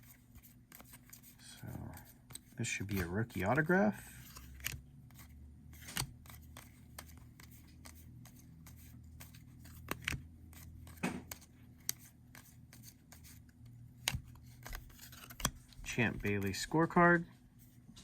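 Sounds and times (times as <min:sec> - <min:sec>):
faint low room hum: 0:00.0 - 0:18.0
trading cards flicked through: 0:02.0 - 0:13.4, 0:14.0 - 0:16.8.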